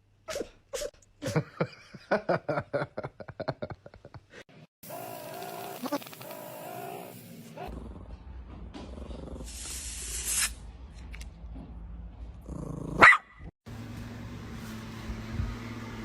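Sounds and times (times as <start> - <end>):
dog barking: 13.0 - 13.4.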